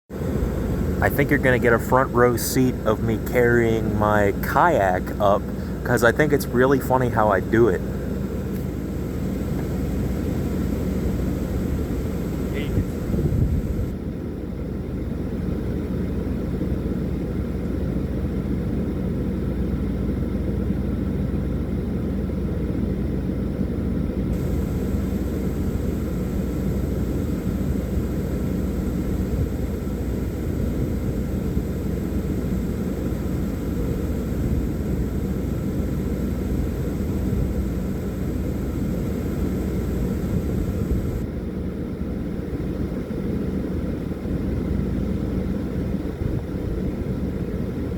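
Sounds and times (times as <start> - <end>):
wind buffeting microphone: 9.8 - 14.0, 38.6 - 41.3.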